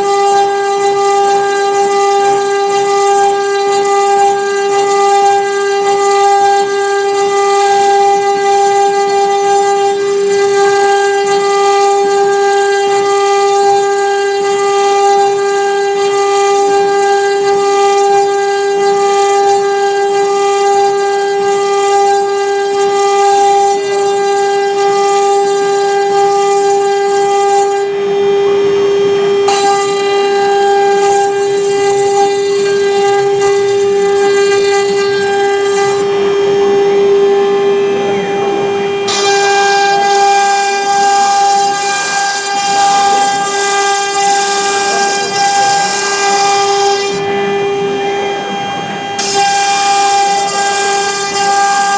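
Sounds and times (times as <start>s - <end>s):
router bit hissing through wood: 0.0s - 51.9s
spindle whining: 28.0s - 51.9s.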